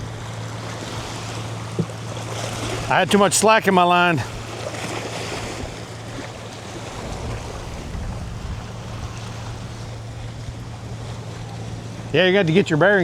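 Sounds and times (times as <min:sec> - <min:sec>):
low steady hum: 0:00.0 - 0:13.0
waves on shore: 0:00.0 - 0:13.0
wind on microphone: 0:05.2 - 0:12.2.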